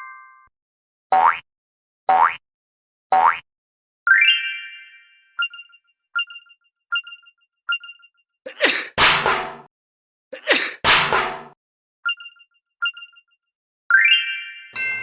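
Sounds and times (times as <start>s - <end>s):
railroad crossing bell dinging: 14.8s - 15.0s.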